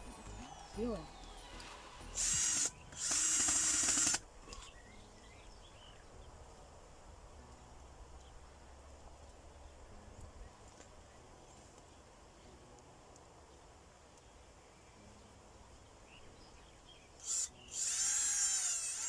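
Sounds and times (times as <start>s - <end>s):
power drill whining: 1.6s - 4.6s, 17.2s - 19.0s.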